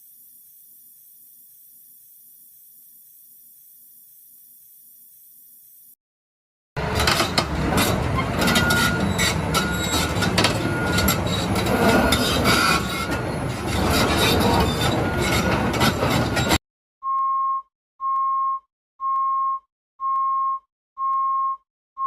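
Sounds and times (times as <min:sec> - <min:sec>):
excavator metal clatter: 0:06.8 - 0:16.6
high-pitched squeals: 0:07.7 - 0:16.6.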